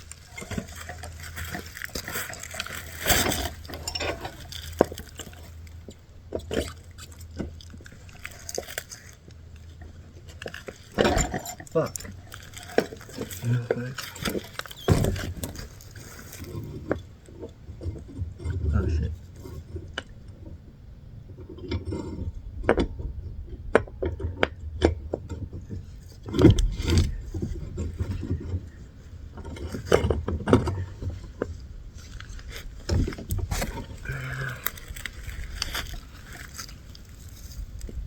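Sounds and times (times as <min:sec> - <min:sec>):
metallic clanks and scrapes: 0:00.0 - 0:20.2.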